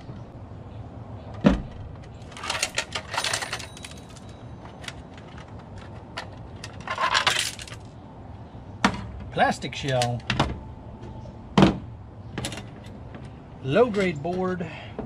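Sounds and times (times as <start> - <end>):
plastic phone parts clattering: 2.0 - 7.8.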